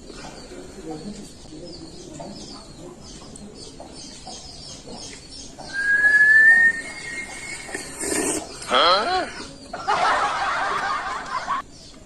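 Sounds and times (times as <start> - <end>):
birds chirping: 0.0 - 12.0
loud high whistle tone: 5.7 - 7.3.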